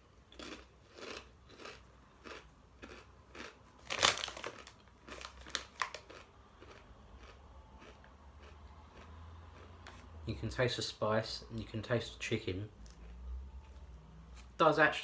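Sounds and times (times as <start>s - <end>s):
chewing crunchy tortilla chips: 0.2s - 10.1s, 12.7s - 13.9s.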